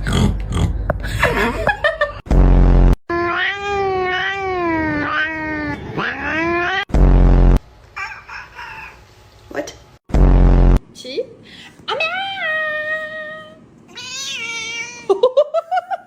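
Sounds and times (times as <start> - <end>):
cat yowling: 3.1 - 6.9, 12.2 - 15.1
low buzz: 6.9 - 7.7, 10.1 - 10.9.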